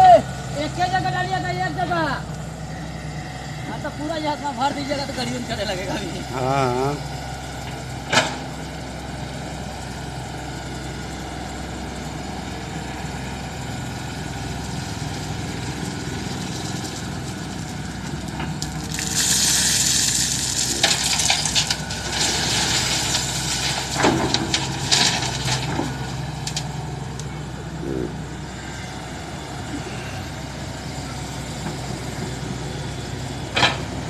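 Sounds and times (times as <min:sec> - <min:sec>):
excavator engine running: 0:00.0 - 0:34.0
gravel pouring: 0:15.2 - 0:26.6.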